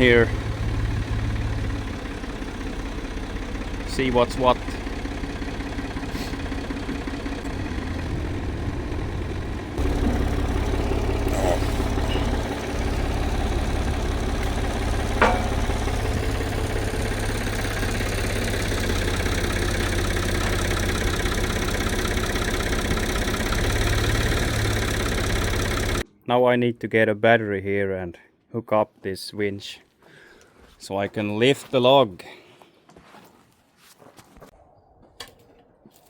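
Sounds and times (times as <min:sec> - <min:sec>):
engine idling: 0:00.0 - 0:26.0.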